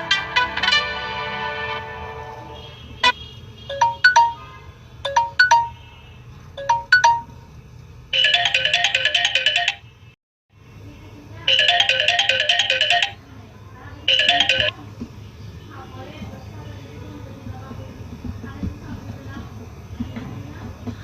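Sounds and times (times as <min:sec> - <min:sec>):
electronic ringtone notes: 0:03.7 - 0:05.8, 0:06.6 - 0:07.4, 0:08.1 - 0:09.9, 0:11.5 - 0:13.2, 0:14.1 - 0:14.7.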